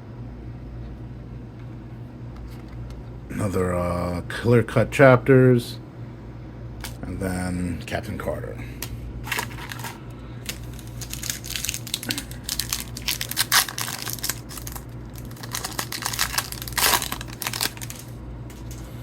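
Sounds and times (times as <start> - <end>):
foil wrapper crinkling and tearing: 8.8 - 18.8.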